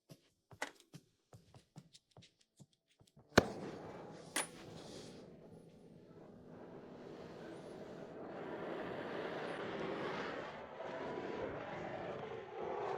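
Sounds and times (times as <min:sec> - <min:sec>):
torch igniting pop: 0:03.4 - 0:03.8.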